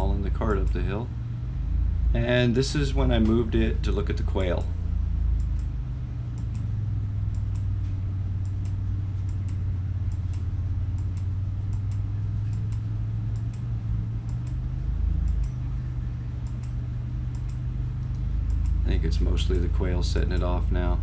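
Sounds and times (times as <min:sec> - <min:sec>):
steady low hum: 0:00.0 - 0:21.0
computer keys clicking: 0:06.3 - 0:06.7, 0:08.4 - 0:14.6, 0:15.2 - 0:15.6, 0:16.4 - 0:18.8.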